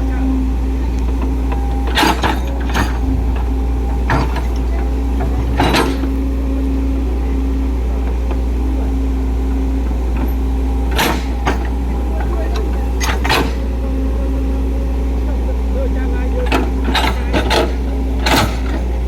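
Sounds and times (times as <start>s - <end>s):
excavator engine running: 0.0s - 19.0s
sharp metal clanks: 1.9s - 6.4s.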